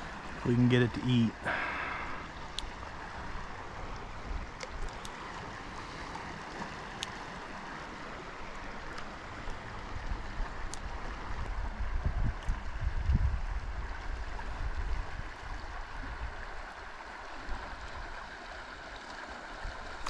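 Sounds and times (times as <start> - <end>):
flowing river water: 0.0 - 20.0
faint ticks: 2.5 - 2.7
wind buffeting microphone: 9.8 - 16.7.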